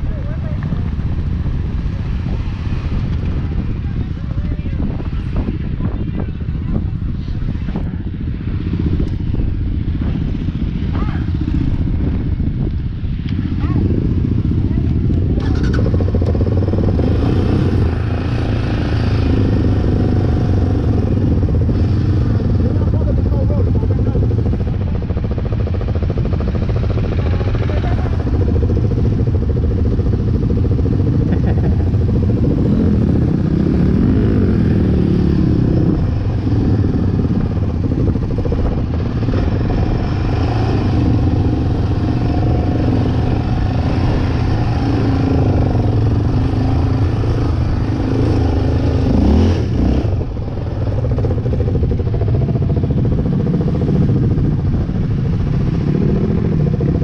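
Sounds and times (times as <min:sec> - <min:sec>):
off-road vehicle engine revving: 0:13.4 - 0:24.7, 0:26.1 - 0:57.0
vehicle rattling: 0:13.4 - 0:57.0.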